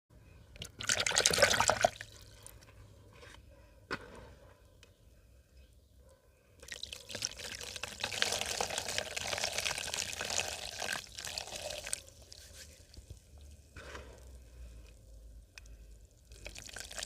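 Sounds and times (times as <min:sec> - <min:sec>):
cement pouring into water: 0:00.6 - 0:02.1, 0:06.6 - 0:13.2, 0:16.2 - 0:17.0.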